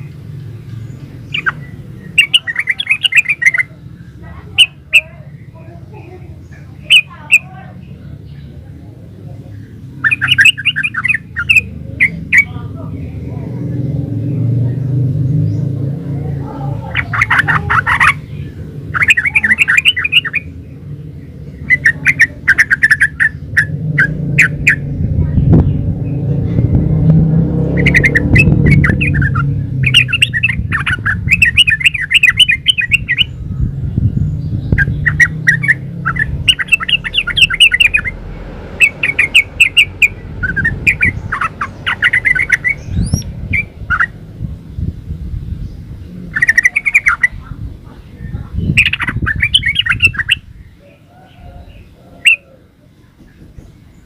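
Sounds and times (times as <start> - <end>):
bird singing chattering notes: 0.0 - 52.5
low rumble: 23.2 - 50.8.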